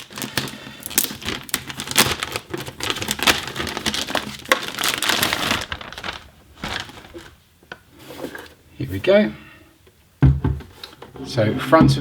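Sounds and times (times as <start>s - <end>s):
packaging crinkling and rustling: 0.0s - 8.6s.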